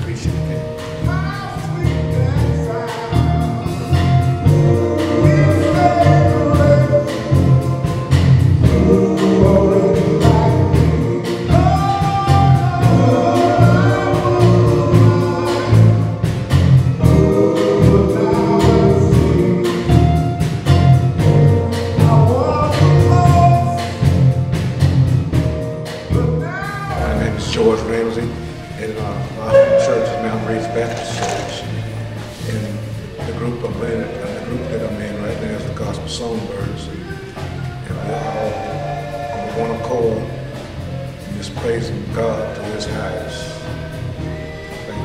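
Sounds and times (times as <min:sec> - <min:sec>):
instrumental backing with beat: 0:00.0 - 0:34.6
men singing in harmony: 0:01.5 - 0:20.9, 0:26.9 - 0:45.0.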